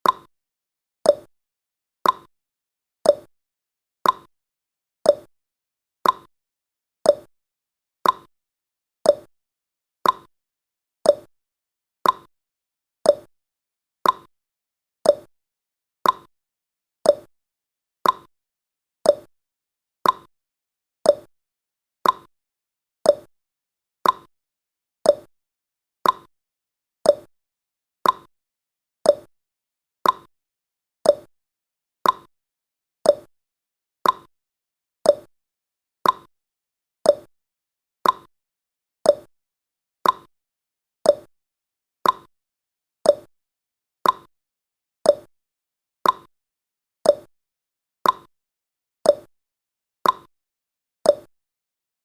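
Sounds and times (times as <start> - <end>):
timer ticking: 0.0 - 0.3, 1.1 - 1.3, 2.0 - 2.3, 3.1 - 3.3, 4.0 - 4.3, 5.1 - 5.3, 6.0 - 6.3, 7.1 - 7.3, 8.0 - 8.3, 9.1 - 9.3, 10.0 - 10.3, 11.1 - 11.3, 12.0 - 12.3, 13.1 - 13.3, 14.0 - 14.3, 15.0 - 15.3, 16.0 - 16.3, 17.1 - 17.3, 18.0 - 18.3, 19.0 - 19.3, 20.0 - 20.3, 21.1 - 21.3, 22.0 - 22.3, 23.1 - 23.3, 24.0 - 24.3, 25.0 - 25.3, 26.0 - 26.3, 27.0 - 27.3, 28.0 - 28.3, 29.0 - 29.3, 30.0 - 30.3, 31.0 - 31.3, 32.0 - 32.3, 33.0 - 33.3, 34.0 - 34.3, 35.0 - 35.3, 36.0 - 36.3, 37.1 - 37.3, 38.0 - 38.3, 39.1 - 39.3, 40.0 - 40.3, 41.0 - 41.3, 42.0 - 42.3, 43.1 - 43.3, 44.0 - 44.3, 45.1 - 45.3, 46.0 - 46.3, 47.1 - 47.3, 48.0 - 48.3, 49.1 - 49.3, 50.0 - 50.3, 51.1 - 51.3.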